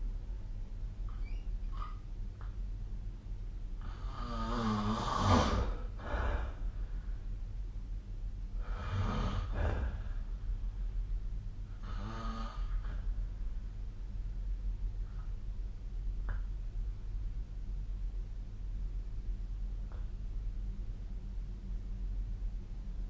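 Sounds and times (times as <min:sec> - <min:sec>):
steady low hum: 0:00.0 - 0:23.0
person snoring: 0:03.8 - 0:06.6, 0:08.6 - 0:10.3, 0:11.8 - 0:13.0.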